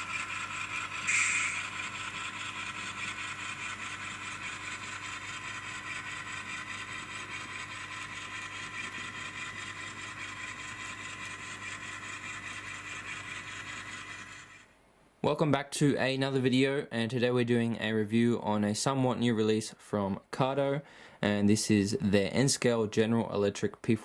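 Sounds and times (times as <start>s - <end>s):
thin model locomotive engine sound: 0.0s - 14.7s.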